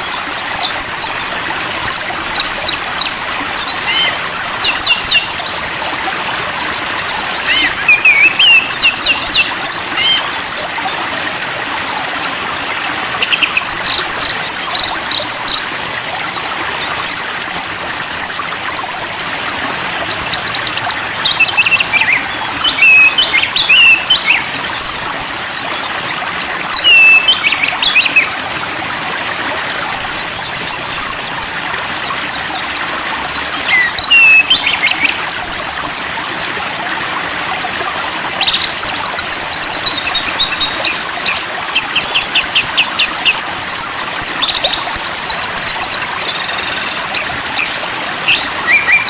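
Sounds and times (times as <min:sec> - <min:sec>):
flowing water rushing: 0:00.0 - 0:49.0
songbird whistling phrases: 0:07.5 - 0:09.4, 0:10.0 - 0:10.2, 0:26.8 - 0:28.3, 0:33.7 - 0:35.2, 0:45.6 - 0:49.0.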